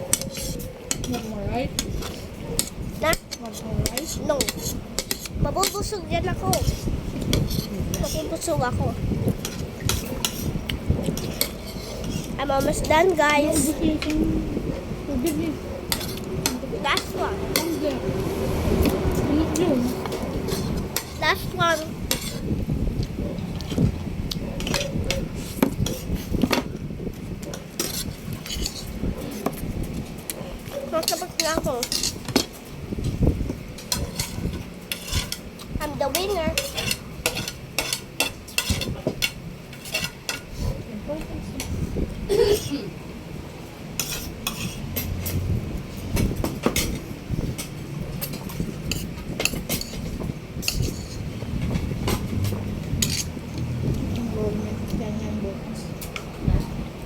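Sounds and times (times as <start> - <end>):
cutlery scraping on a plate: 0.0 - 5.9, 6.5 - 8.5, 9.3 - 12.4, 15.2 - 17.9, 19.9 - 22.5, 24.5 - 26.7, 27.5 - 30.3, 31.0 - 32.6, 33.8 - 40.8, 44.0 - 45.4, 46.0 - 53.4
low background rumble: 0.9 - 57.0
cutlery clinking on plates: 36.2 - 40.8, 44.0 - 45.4, 46.2 - 51.2, 52.1 - 53.3.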